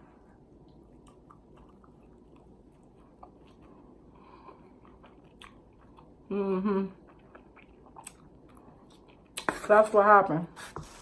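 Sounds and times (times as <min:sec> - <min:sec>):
person chewing with wet mouth clicks: 0:00.6 - 0:03.7, 0:04.7 - 0:06.1, 0:07.0 - 0:09.5.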